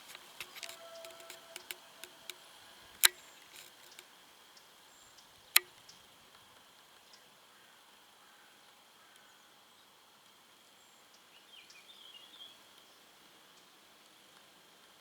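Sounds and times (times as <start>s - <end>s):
short sharp clicks: 0.0s - 2.4s.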